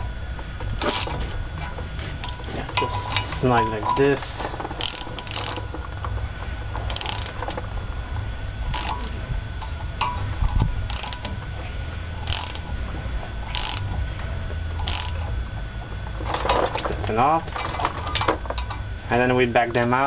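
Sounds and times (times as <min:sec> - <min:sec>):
steady low hum: 0:00.0 - 0:20.0
hand ratchet clicking: 0:06.9 - 0:07.6, 0:08.7 - 0:09.1, 0:10.0 - 0:11.3, 0:12.2 - 0:12.6, 0:13.5 - 0:13.9, 0:14.8 - 0:15.2.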